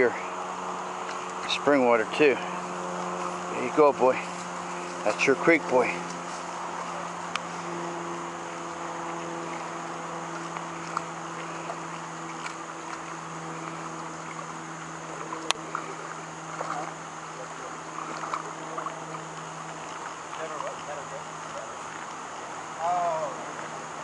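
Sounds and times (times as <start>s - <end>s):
creek water running: 0.0s - 24.0s
low hum: 0.0s - 24.0s.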